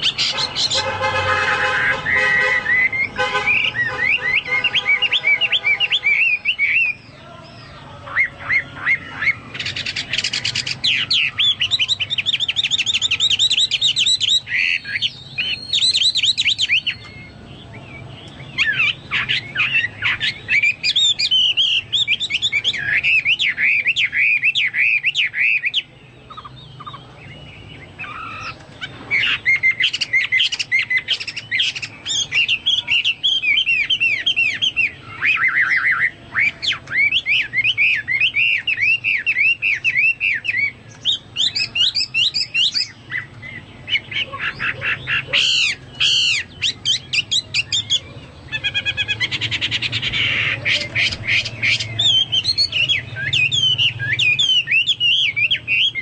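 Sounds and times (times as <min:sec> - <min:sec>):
bird singing whistled phrases: 0:01.8 - 0:27.0, 0:27.8 - 0:56.0.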